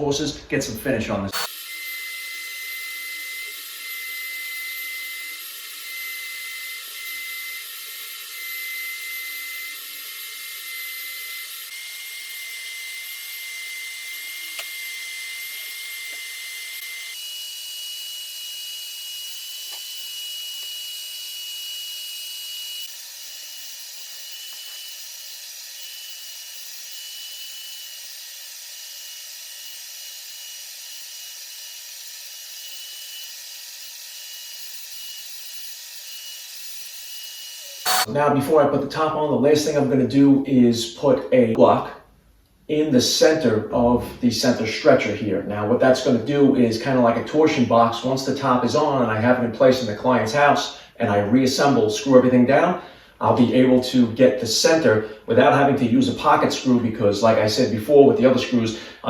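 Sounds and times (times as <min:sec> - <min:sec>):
motor whine: 0:01.3 - 0:38.1.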